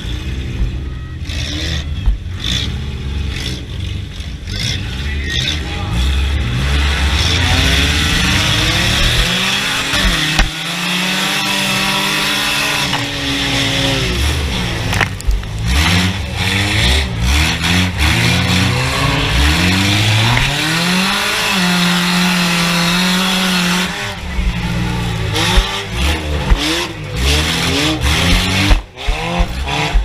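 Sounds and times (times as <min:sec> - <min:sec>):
race car engines revving: 0:00.0 - 0:30.0
sharp knocks: 0:09.0 - 0:10.6, 0:28.0 - 0:30.0.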